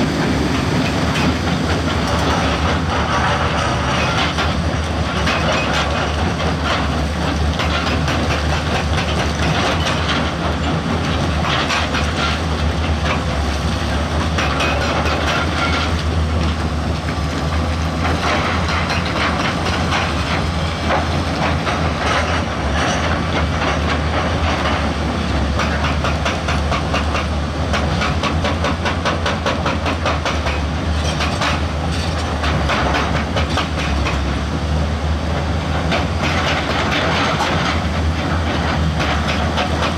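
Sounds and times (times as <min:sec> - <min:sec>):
diesel engine drone: 0:00.0 - 0:28.5.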